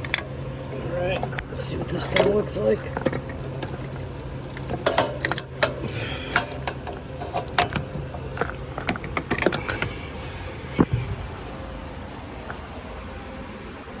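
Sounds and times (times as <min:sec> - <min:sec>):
low steady hum: 0:00.0 - 0:14.0
metal tools clicking and clinking: 0:02.0 - 0:09.9.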